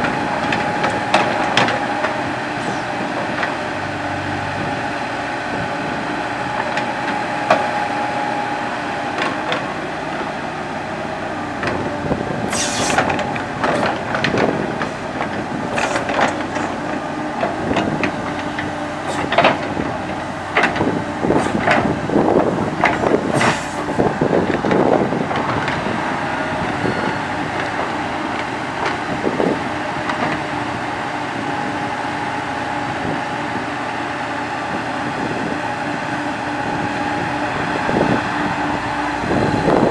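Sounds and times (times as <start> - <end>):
excavator diesel engine running: 0.0 - 39.9
short hissing bursts: 12.5 - 12.9.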